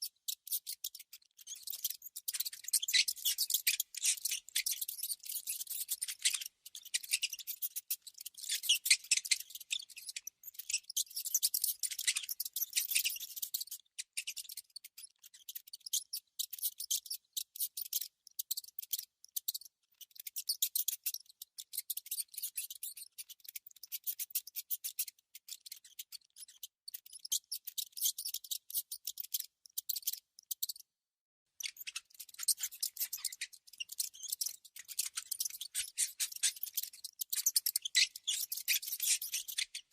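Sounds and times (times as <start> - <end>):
mouse scratching and gnawing: 31.6 - 39.8.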